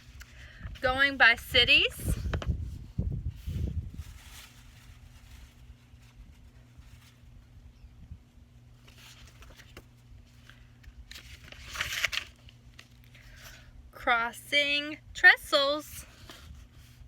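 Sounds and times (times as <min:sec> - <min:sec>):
faint steady hum: 0:00.0 - 0:17.0
page turning rustle: 0:03.4 - 0:07.4, 0:08.8 - 0:13.6.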